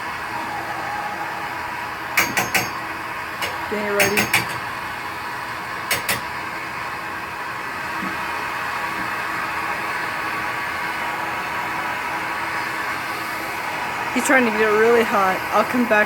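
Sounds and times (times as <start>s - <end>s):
torch flame hissing: 0.0s - 16.0s.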